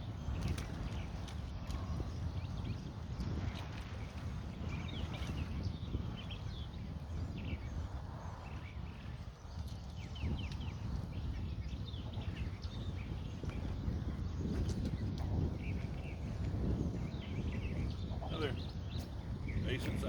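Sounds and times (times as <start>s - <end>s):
small birds chirping: 0.0s - 20.0s
wind buffeting microphone: 0.0s - 20.0s.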